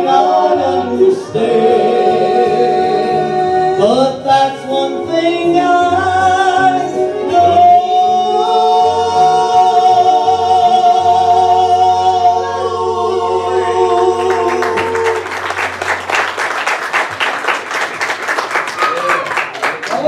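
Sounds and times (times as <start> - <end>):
gospel singers holding a note: 0.0 - 16.3
clapping and applause: 14.1 - 20.0.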